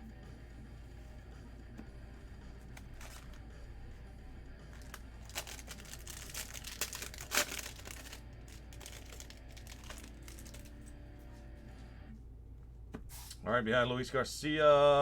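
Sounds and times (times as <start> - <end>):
quiet background music: 0.0 - 15.0
foil wrapper crinkling and tearing: 2.8 - 3.4, 4.6 - 10.9.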